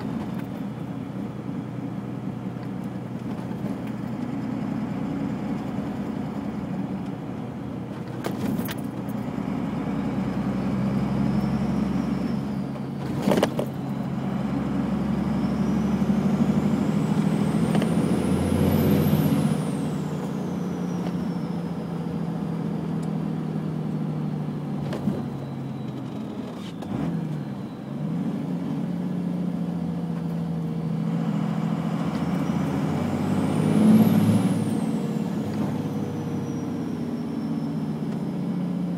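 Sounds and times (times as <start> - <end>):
diesel engine running: 0.0 - 38.9
turbocharger whistling: 9.2 - 29.9, 30.5 - 38.9.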